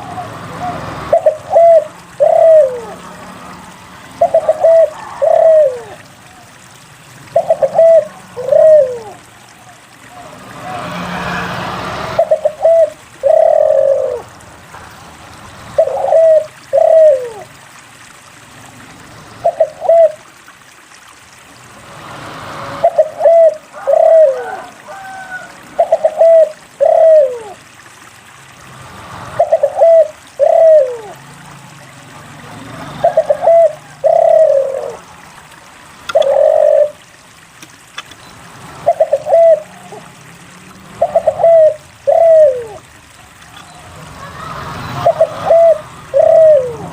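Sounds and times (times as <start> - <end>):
dove cooing: 0.0 - 3.1, 4.1 - 6.5, 7.3 - 10.4, 12.2 - 14.4, 15.8 - 17.5, 19.4 - 20.2, 22.8 - 27.6, 29.4 - 31.2, 32.8 - 35.1, 36.1 - 37.1, 38.8 - 40.1, 41.0 - 46.9.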